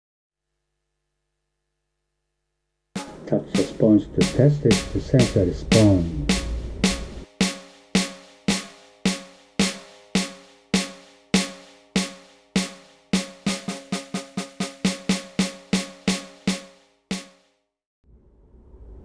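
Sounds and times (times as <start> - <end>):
electronic snare drum hits: 3.0 - 17.4.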